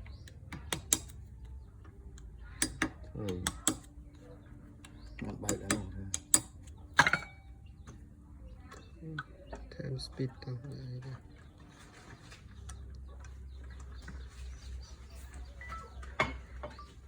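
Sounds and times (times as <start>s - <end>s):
metal tools clicking and knocking: 0.0s - 11.3s, 15.4s - 17.0s.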